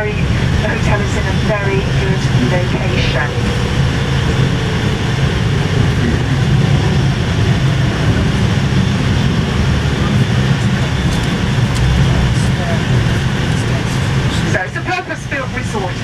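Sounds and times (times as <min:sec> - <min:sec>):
coach engine and road rumble: 0:00.0 - 0:16.0.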